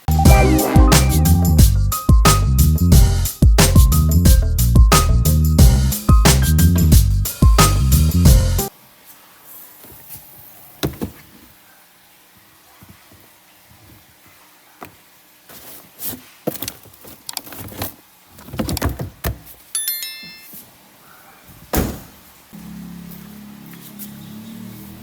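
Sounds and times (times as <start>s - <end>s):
high stepped tones: 0.0s - 8.7s.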